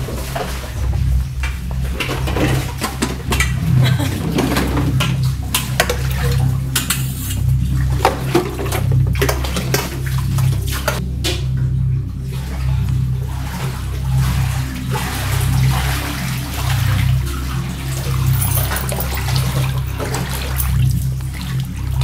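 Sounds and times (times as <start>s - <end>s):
steady low hum: 0.0s - 22.0s
dishes and pots clattering: 2.1s - 9.4s.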